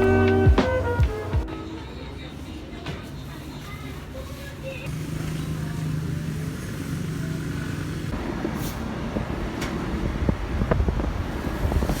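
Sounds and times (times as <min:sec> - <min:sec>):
motor vehicle droning: 0:04.9 - 0:12.0.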